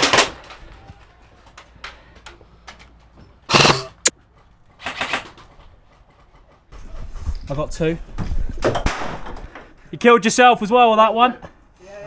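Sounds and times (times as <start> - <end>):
airsoft shots: 3.5 - 4.1, 8.6 - 9.6
airsoft grenade bang: 8.6 - 9.7.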